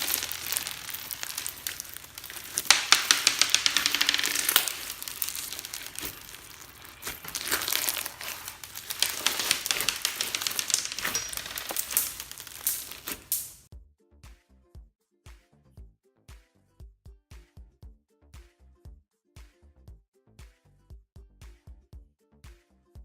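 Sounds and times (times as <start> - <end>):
slime crunchy crackling: 0.0 - 13.7.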